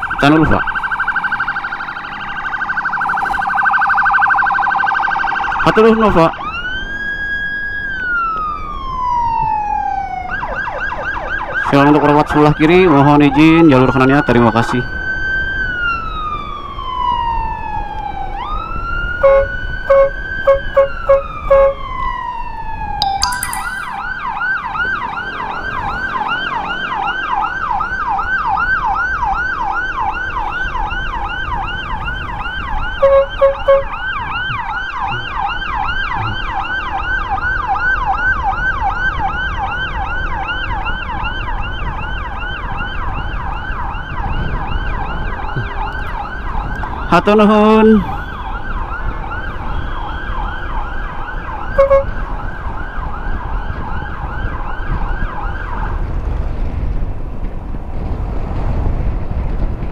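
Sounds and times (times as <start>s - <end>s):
electronic siren wailing and yelping: 0.0s - 13.4s, 17.1s - 24.7s, 31.3s - 39.8s, 43.9s - 52.3s
short horn beeps: 33.0s - 33.8s, 51.8s - 52.1s.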